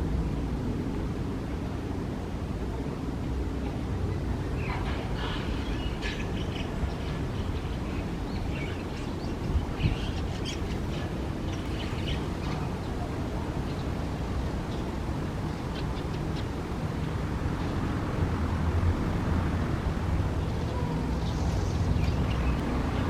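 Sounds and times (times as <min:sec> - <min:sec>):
small birds chirping: 0:04.2 - 0:16.8, 0:20.4 - 0:23.0.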